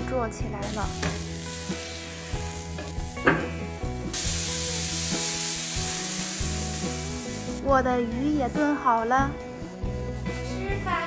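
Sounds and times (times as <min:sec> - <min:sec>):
food sizzling in hot oil: 0:00.6 - 0:07.7.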